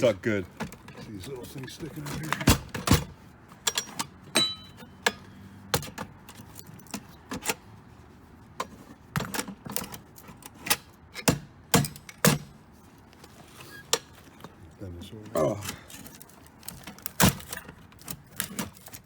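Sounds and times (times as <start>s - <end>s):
metal clinks and knocks: 0.5s - 7.5s, 15.6s - 19.0s.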